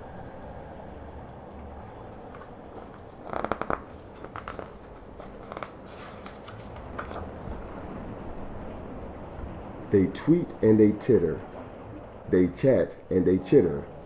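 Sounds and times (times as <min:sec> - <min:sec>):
book pages rustling: 0:03.6 - 0:08.3.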